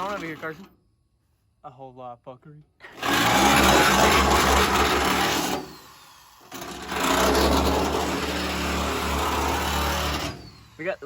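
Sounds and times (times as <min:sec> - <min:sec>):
motor humming and whirring: 0:09.1 - 0:11.0.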